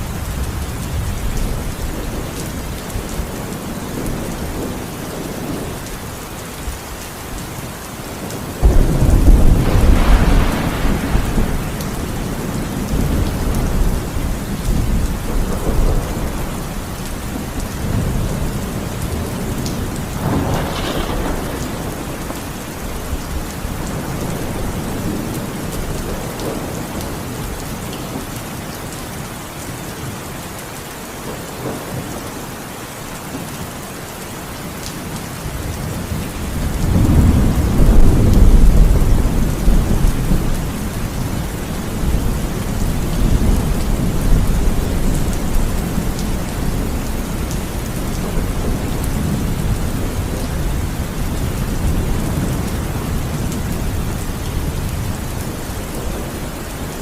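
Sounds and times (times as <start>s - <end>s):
heavy rain falling: 0.0s - 57.0s
thunder rumbling: 8.1s - 28.2s, 35.6s - 57.0s
thunder crack: 8.6s - 14.1s, 20.0s - 22.5s.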